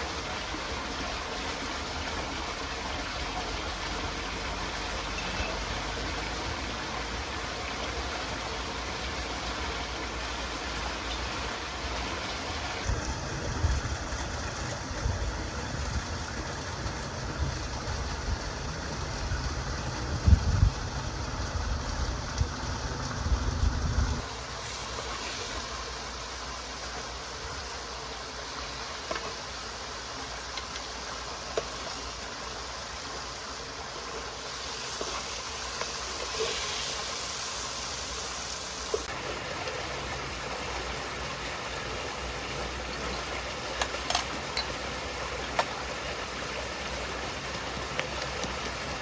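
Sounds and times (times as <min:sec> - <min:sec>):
stream rushing: 0:00.0 - 0:49.0
low rumbles and thumps: 0:12.9 - 0:24.2.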